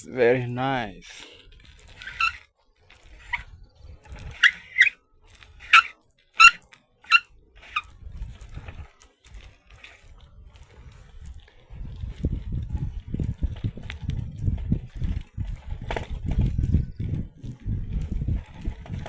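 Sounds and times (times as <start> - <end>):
squeaky animal calls: 2.0 - 2.4, 4.4 - 5.0, 5.6 - 7.8
low rumble on microphone: 7.9 - 8.9, 10.1 - 19.0.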